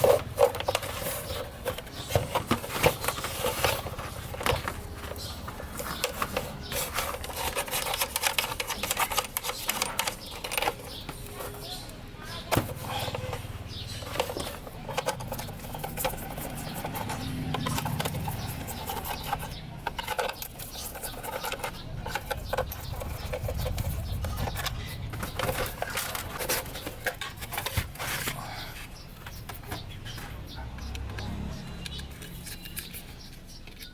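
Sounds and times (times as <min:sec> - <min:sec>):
clicks taps and scraping: 0:00.0 - 0:33.9.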